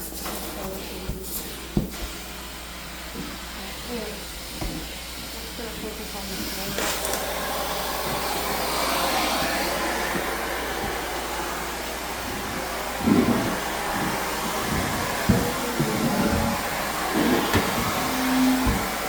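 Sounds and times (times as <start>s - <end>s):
vacuum cleaner hose sucking air: 0.4s - 19.0s
vacuum tool knocking: 6.6s - 19.0s.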